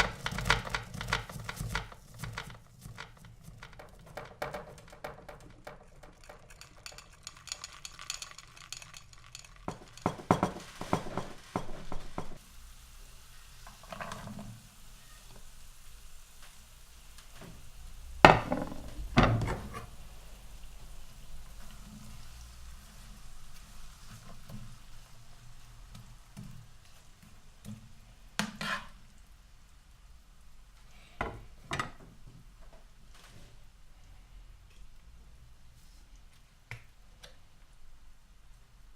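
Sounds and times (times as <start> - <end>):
utensil scraping against pan: 0.0 - 12.4, 28.4 - 29.0
food sizzling in a pan: 7.1 - 32.2.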